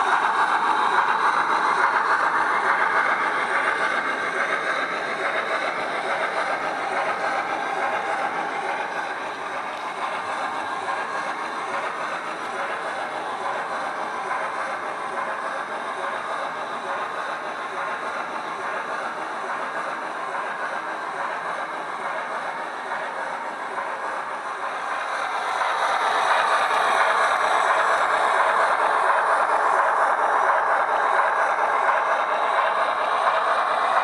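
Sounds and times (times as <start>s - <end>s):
simulated steam locomotive sound: 0.0s - 34.0s.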